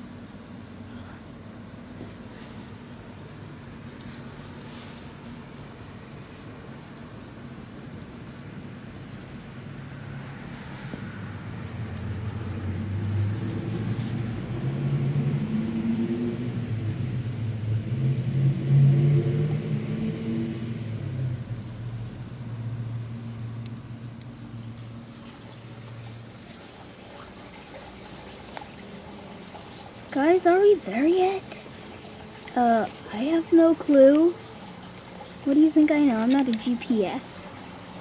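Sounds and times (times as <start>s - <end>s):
vehicle engine rumble: 0.0s - 26.9s.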